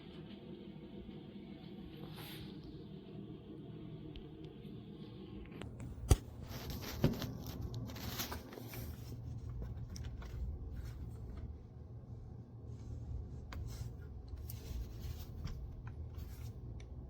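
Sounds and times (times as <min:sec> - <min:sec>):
scraping and rustling: 0:06.2 - 0:11.6, 0:12.7 - 0:16.8.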